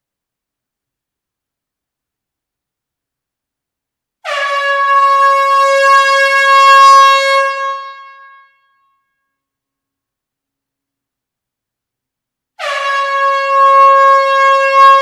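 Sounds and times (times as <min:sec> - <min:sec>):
air horn blast: 0:04.2 - 0:08.6, 0:12.6 - 0:15.0.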